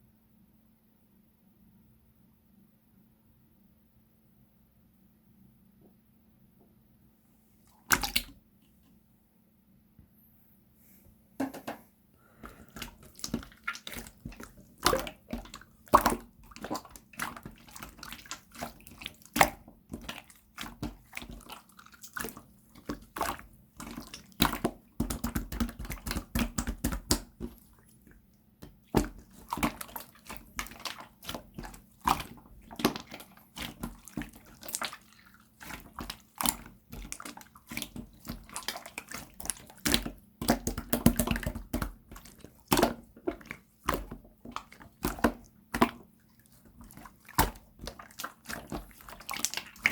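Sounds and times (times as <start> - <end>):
slime squelching by hand: 7.6 - 8.4, 12.2 - 49.9.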